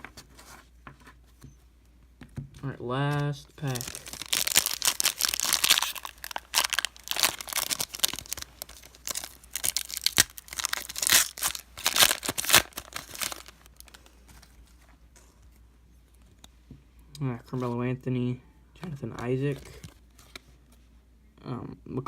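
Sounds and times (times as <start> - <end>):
plastic wrapper tearing and crinkling: 3.6 - 14.2.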